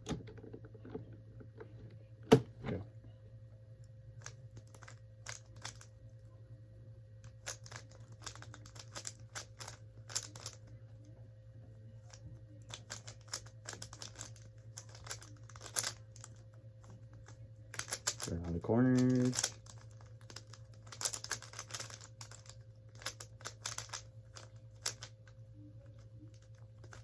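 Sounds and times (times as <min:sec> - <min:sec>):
faint steady hum: 0:00.0 - 0:27.0
plastic cube clicks and clacks: 0:04.2 - 0:05.9, 0:07.3 - 0:10.7, 0:12.1 - 0:16.4, 0:17.2 - 0:27.0.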